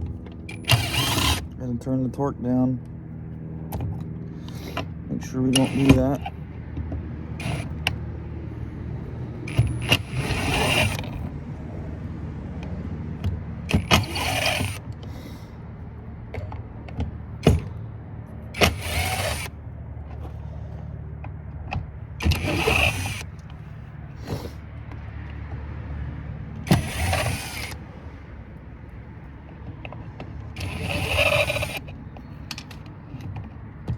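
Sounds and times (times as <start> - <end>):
power drill backing out screws: 0.5 - 1.6, 4.4 - 6.3, 7.3 - 8.0, 9.3 - 12.1, 13.2 - 15.4, 18.5 - 19.6, 22.2 - 23.6, 26.7 - 27.8, 30.5 - 32.8
sharp clicks of parts handled: 21.2 - 23.6, 29.4 - 33.9.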